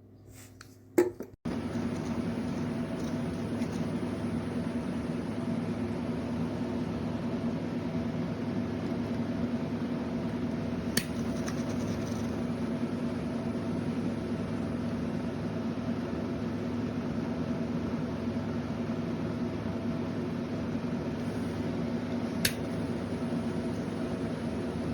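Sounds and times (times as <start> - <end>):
torch flame burning: 1.5 - 12.6, 21.2 - 24.9.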